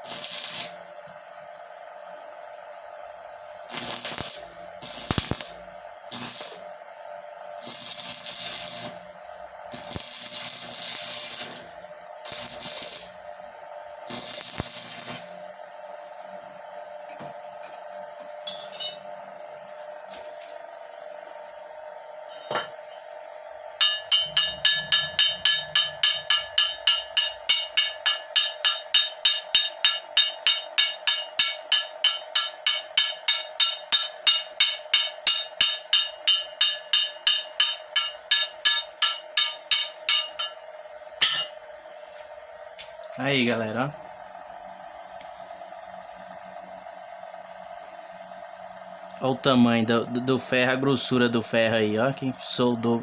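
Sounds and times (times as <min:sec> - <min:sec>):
welding arc crackling and hissing: 0:00.0 - 0:01.0, 0:03.5 - 0:06.7, 0:07.6 - 0:13.4, 0:14.0 - 0:15.6, 0:23.8 - 0:40.6
steady hum: 0:22.2 - 0:45.0
hammer strikes on metal: 0:23.8 - 0:40.6, 0:41.2 - 0:41.6.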